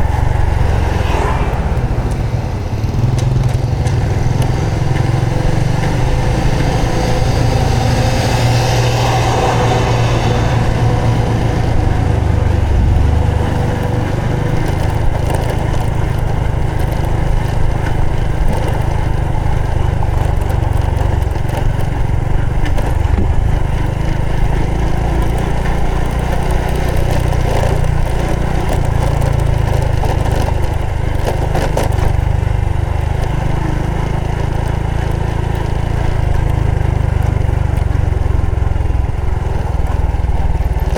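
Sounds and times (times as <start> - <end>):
wind rush: 0.0 - 15.2
motorcycle engine running: 0.0 - 40.9.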